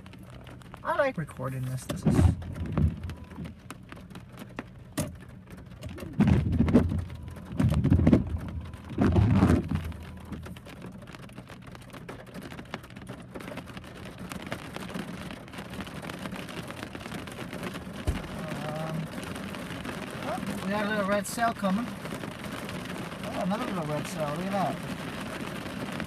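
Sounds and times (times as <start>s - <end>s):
low rumbling bursts: 0.0s - 10.8s, 16.8s - 20.8s
heavy rain falling: 0.0s - 26.0s
raindrop ticks: 0.0s - 26.0s.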